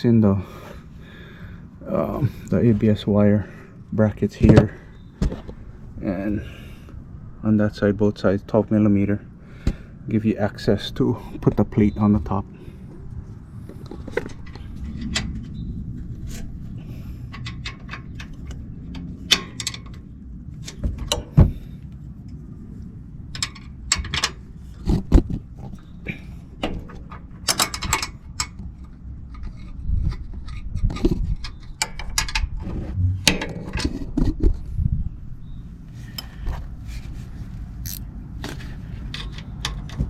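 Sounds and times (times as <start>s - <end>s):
steady low rumble: 0.0s - 20.7s, 32.8s - 33.8s
wrench clicking and scraping on metal: 37.8s - 38.0s.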